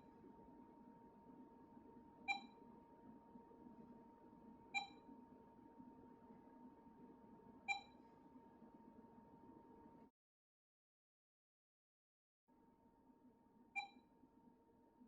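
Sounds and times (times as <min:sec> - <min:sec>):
faint steady hum: 0:00.0 - 0:10.1.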